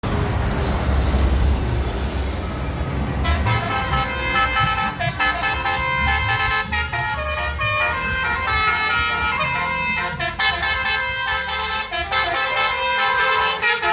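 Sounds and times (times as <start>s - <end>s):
low rumble of bus traffic: 0.0s - 13.9s
melodic bus horns: 1.2s - 13.9s.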